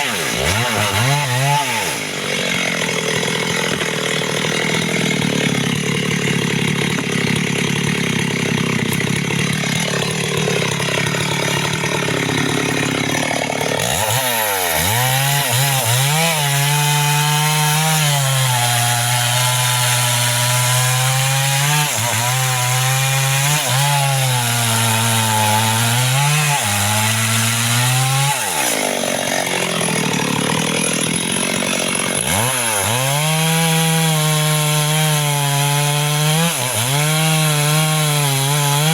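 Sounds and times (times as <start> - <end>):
chainsaw cutting tree: 0.0 - 38.9.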